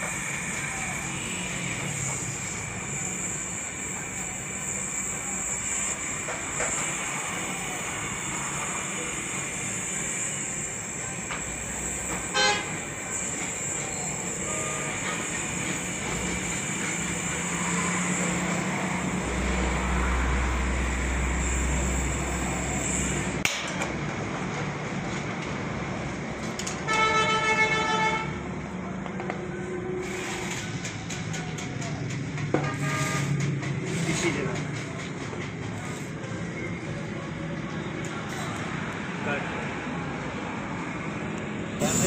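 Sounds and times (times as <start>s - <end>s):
high steady whine: 0.0s - 23.7s
traffic noise: 0.0s - 42.0s.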